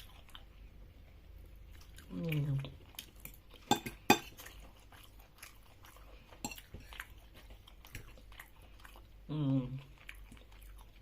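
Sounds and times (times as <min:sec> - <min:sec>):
wet chewing smacks: 0:00.0 - 0:11.0.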